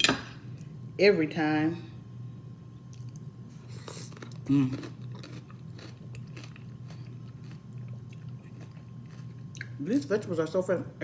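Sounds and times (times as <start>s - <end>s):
person chewing food: 2.9s - 9.8s
crisp crunch of food: 3.0s - 9.8s.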